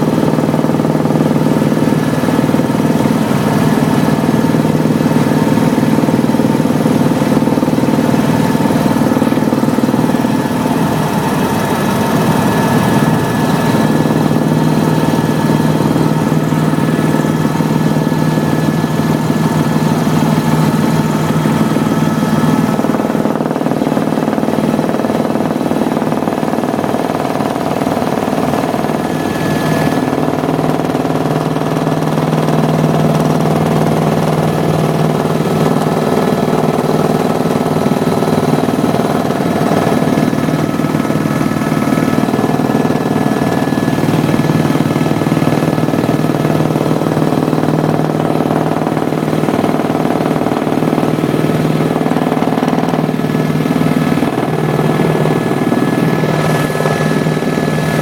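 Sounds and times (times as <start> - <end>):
helicopter engine and rotor drone: 0.0 - 58.0.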